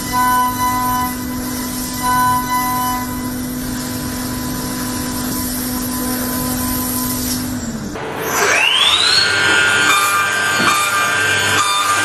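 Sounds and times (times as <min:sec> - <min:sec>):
cutting and machine noise: 0:00.0 - 0:12.0
machine hum: 0:00.0 - 0:12.0.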